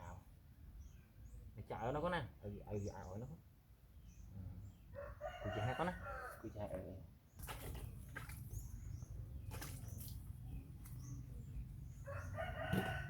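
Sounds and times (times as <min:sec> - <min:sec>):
rooster crowing: 0:05.0 - 0:06.4, 0:12.0 - 0:13.0.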